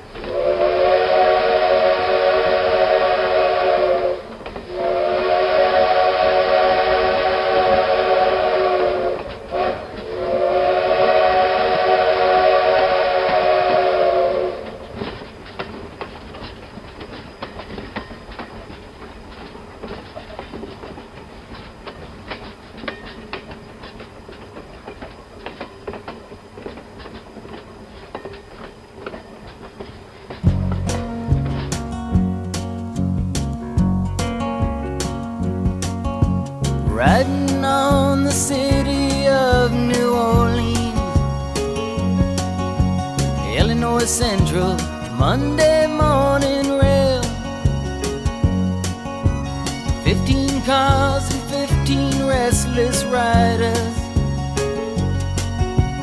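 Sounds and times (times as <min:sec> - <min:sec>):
low train rumble: 0:00.0 - 0:56.0
train whistle blasts: 0:00.3 - 0:14.9
rail wheels clacking over joints: 0:14.6 - 0:56.0.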